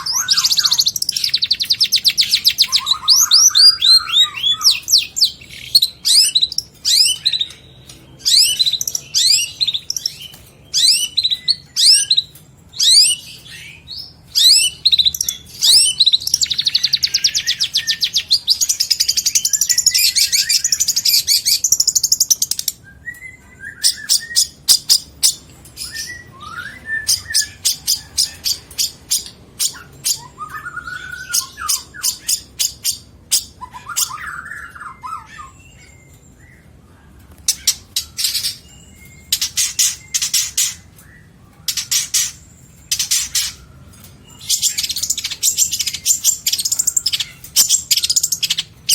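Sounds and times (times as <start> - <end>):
shrike singing varied song: 0.0 - 36.6.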